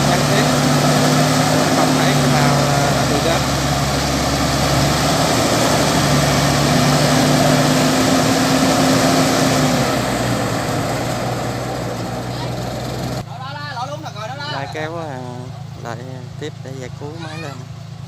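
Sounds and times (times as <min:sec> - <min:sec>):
heavy machinery engine under load: 0:00.0 - 0:13.3.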